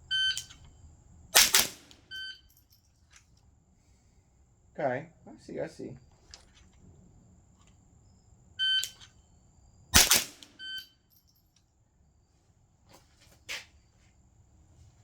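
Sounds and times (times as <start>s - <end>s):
rifle shots: 1.4s - 2.1s, 10.0s - 10.8s
short scuffing noise: 12.9s - 15.0s.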